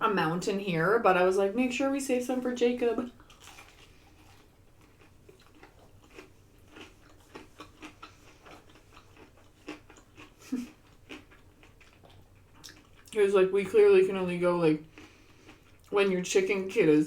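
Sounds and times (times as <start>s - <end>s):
person chewing food: 3.1s - 13.2s, 14.8s - 16.0s.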